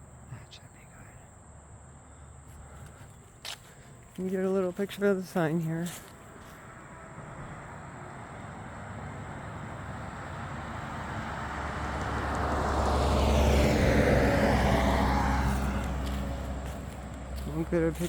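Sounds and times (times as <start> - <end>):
vehicle passing by: 5.8 - 18.0.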